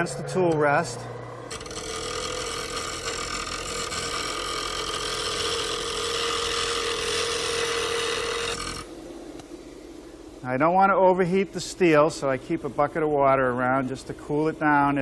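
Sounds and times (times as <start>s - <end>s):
steel being ground: 0.0s - 8.9s
grinder motor hum: 0.0s - 9.4s.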